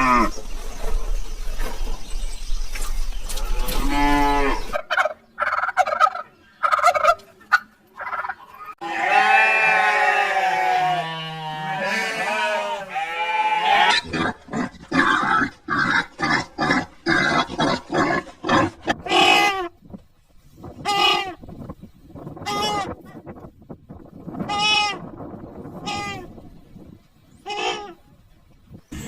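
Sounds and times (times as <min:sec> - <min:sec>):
goat bleating: 0:08.8 - 0:14.0.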